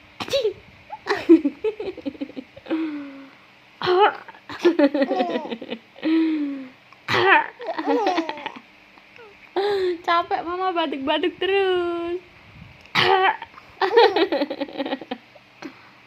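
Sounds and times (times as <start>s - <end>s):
woman coughing playfully: 3.8s - 4.7s, 7.1s - 7.5s, 12.9s - 13.5s
baby laughing: 4.1s - 5.8s, 7.6s - 8.6s, 13.3s - 14.7s.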